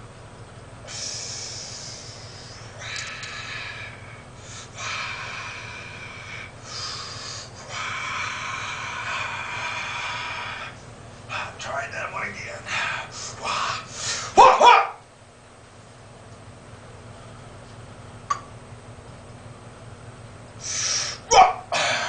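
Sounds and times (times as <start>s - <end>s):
person breathing hard: 0.9s - 11.6s, 12.7s - 14.4s, 20.6s - 22.0s.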